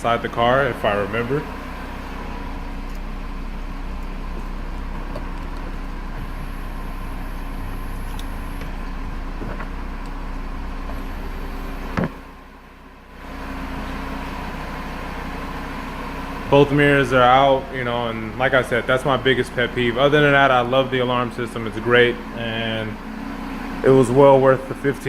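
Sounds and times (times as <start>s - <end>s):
car engine idling: 0.0s - 25.0s
sharp thump: 11.9s - 12.2s.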